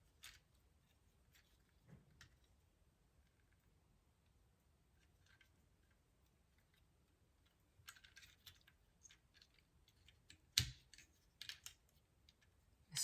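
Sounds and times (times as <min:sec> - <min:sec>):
plastic toy parts clicking: 0:07.8 - 0:12.5.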